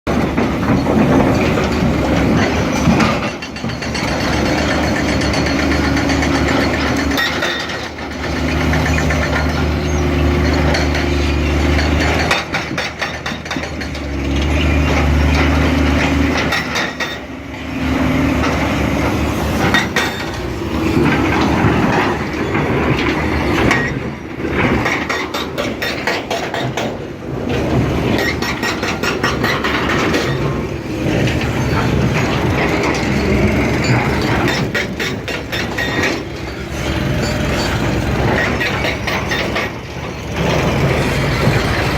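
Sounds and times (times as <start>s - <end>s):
excavator diesel engine: 0.0s - 41.9s
metallic clanks: 0.1s - 41.9s.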